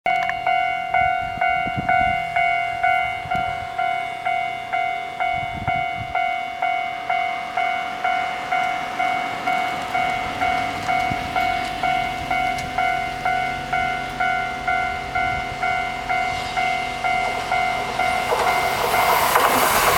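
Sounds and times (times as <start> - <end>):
level crossing bell ringing: 0.1 - 19.7
low railway rumbles: 0.1 - 19.9.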